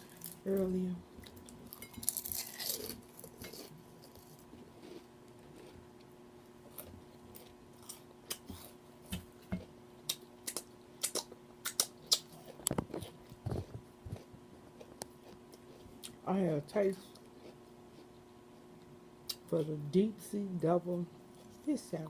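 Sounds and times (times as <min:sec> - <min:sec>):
woman chewing food: 0:01.2 - 0:16.2, 0:17.1 - 0:19.4.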